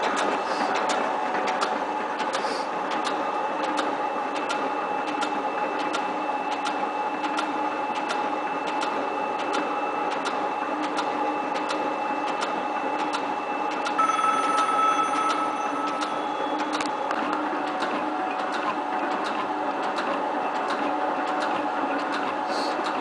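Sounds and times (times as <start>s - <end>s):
machine clicks: 0.0s - 14.6s, 15.2s - 23.0s
metal shaping machine humming: 12.0s - 19.8s
high ringing tone: 14.0s - 17.3s.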